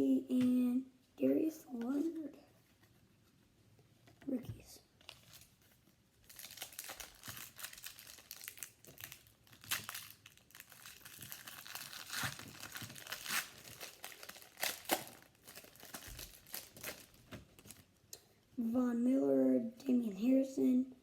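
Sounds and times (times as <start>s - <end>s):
foil wrapper tearing and crinkling: 5.0s - 5.6s, 6.2s - 17.9s.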